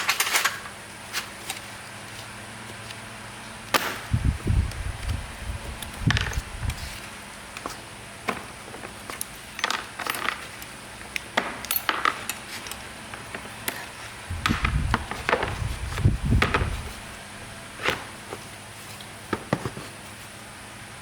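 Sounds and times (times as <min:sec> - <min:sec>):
metal tools clinking: 0:00.0 - 0:00.7, 0:09.2 - 0:10.8, 0:11.6 - 0:13.9.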